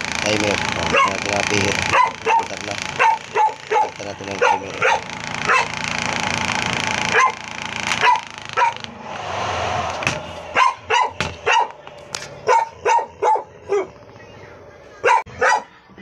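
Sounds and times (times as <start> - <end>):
dog barking: 0.9 - 5.8, 7.1 - 7.4, 8.0 - 8.9, 10.5 - 14.0, 14.9 - 15.8
steady rushing noise: 8.9 - 12.5.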